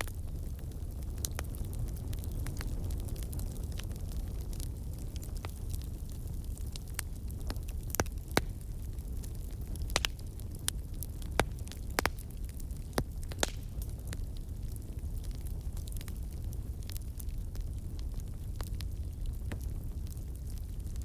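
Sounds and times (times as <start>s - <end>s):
campfire crackling and popping: 0.0s - 21.0s.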